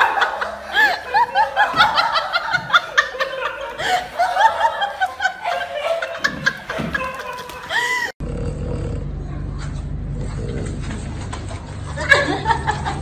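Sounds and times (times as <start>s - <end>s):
high-pitched laughter: 0.0s - 8.2s.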